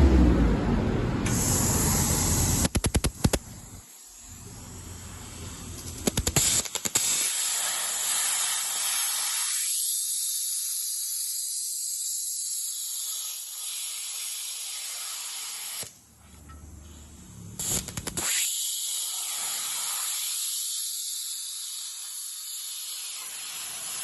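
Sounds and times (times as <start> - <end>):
low hum: 0.0 - 2.7
plasma torch hissing: 1.2 - 24.0
rattle of sharp clicks: 5.7 - 7.2.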